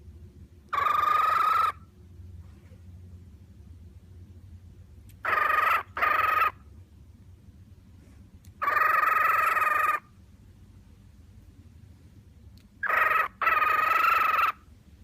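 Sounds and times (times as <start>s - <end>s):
cockatiel calling: 0.7s - 1.8s, 5.2s - 6.6s, 8.6s - 10.1s, 12.8s - 14.7s.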